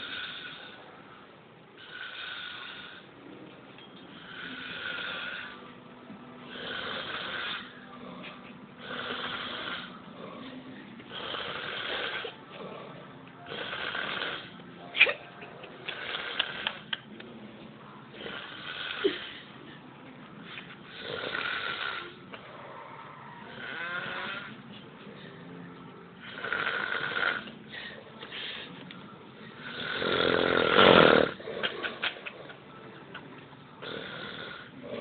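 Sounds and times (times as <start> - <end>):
man snoring: 0.0 - 0.8, 1.8 - 3.1, 4.2 - 5.7, 6.5 - 8.2, 8.8 - 10.4, 11.1 - 12.9, 13.5 - 14.5, 18.2 - 19.1, 20.9 - 22.2, 23.4 - 24.5, 26.2 - 27.4, 29.6 - 31.6, 33.8 - 35.0.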